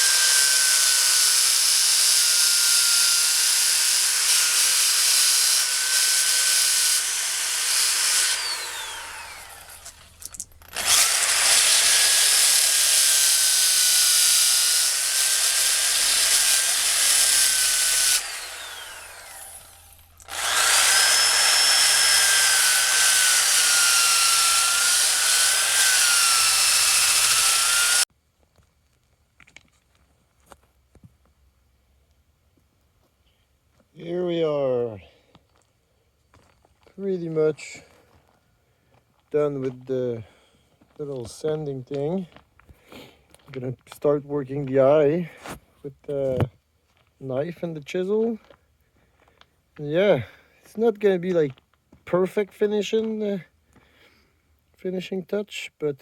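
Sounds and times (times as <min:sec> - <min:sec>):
electric sander whining on wood: 0:00.0 - 0:28.1.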